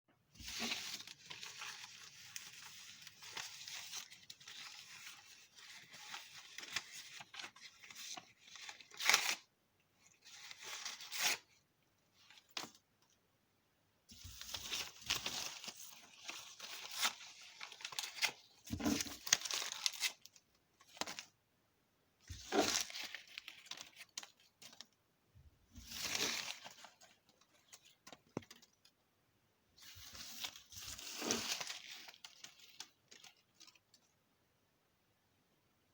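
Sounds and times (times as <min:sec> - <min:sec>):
paper tearing and crumpling: 0:14.2 - 0:20.3, 0:22.3 - 0:24.3, 0:25.8 - 0:27.1, 0:29.8 - 0:33.3.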